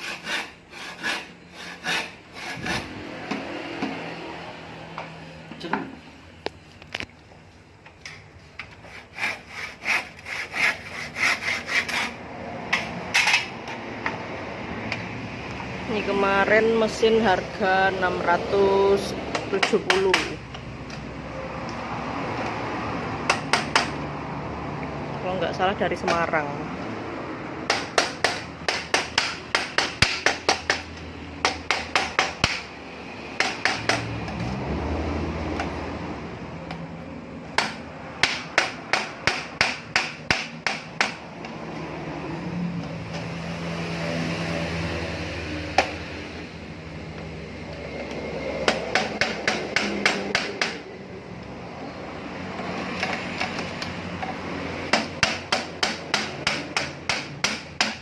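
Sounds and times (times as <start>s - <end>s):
hammering in sharp blows: 27.6s - 32.7s, 33.4s - 34.2s, 37.5s - 41.3s, 48.6s - 50.8s, 54.8s - 58.0s.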